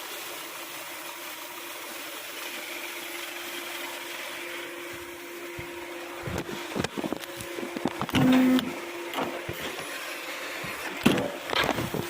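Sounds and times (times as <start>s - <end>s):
car engine running with whine: 4.7s - 12.0s.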